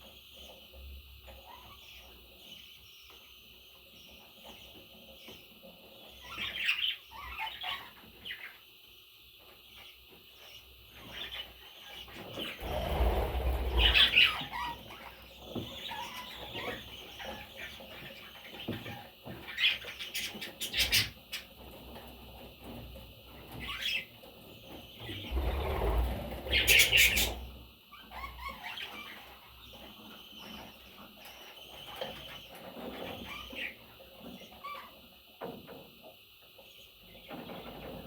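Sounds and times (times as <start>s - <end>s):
rustling and wing flapping: 12.4s - 14.6s, 25.1s - 27.6s
parrots chirping: 12.5s - 17.7s, 25.1s - 29.7s.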